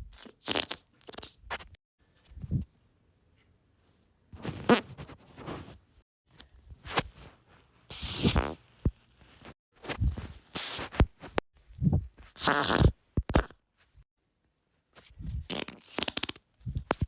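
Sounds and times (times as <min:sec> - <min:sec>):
person farting: 0:00.4 - 0:00.8, 0:04.6 - 0:04.9, 0:08.1 - 0:08.6, 0:12.4 - 0:13.6, 0:15.4 - 0:16.4.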